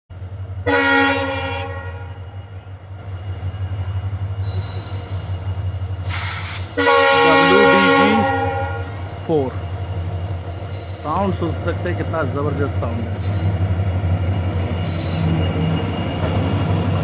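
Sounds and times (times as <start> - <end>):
locomotive horn blast: 0.6 - 2.2, 6.7 - 9.0.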